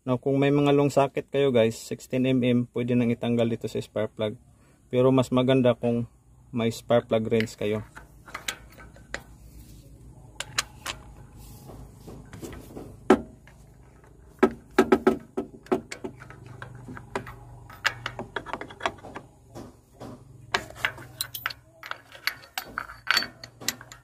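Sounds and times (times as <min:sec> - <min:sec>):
faint steady hum: 0:00.0 - 0:24.0
metal hand tools clicking: 0:20.5 - 0:24.0.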